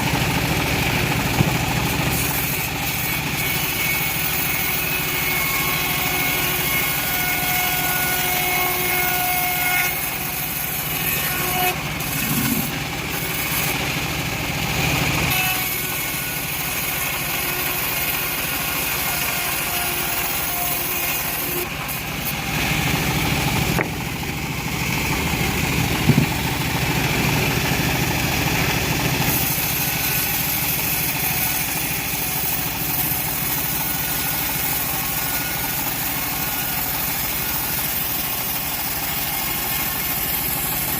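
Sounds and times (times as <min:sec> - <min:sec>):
band sawmill ripping log: 0:00.0 - 0:40.9.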